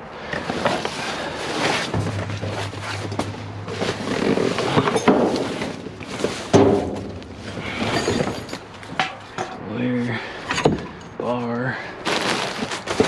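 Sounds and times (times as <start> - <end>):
rustling and clatter of junk: 0.2 - 13.0
sharp knocks: 1.9 - 9.3.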